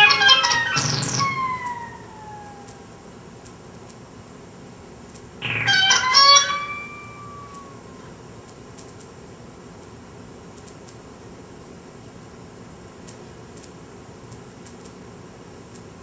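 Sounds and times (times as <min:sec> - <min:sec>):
electronic creature noises: 0:00.0 - 0:02.8, 0:05.4 - 0:07.8
pitched electronic cry: 0:00.0 - 0:03.0, 0:05.4 - 0:08.1.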